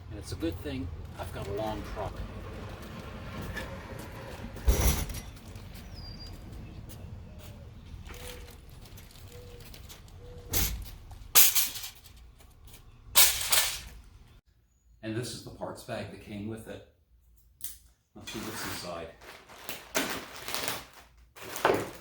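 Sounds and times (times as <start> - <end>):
loud handling noises: 7.9 - 14.1.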